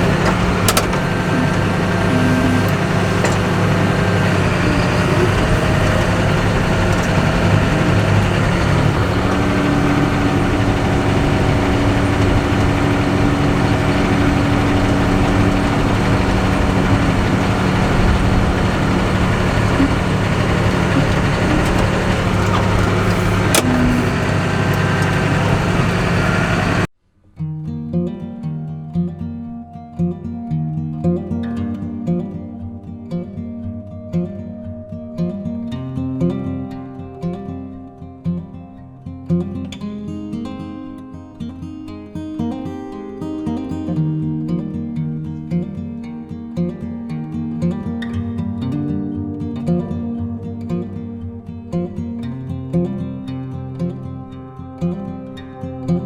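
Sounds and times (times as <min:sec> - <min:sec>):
vehicle engine droning: 0:00.0 - 0:26.9.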